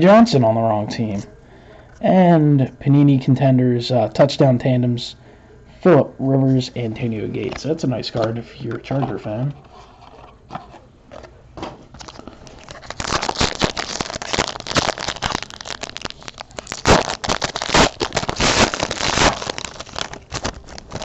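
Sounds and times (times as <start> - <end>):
card pack wrapper tearing and crinkling: 11.9 - 21.0.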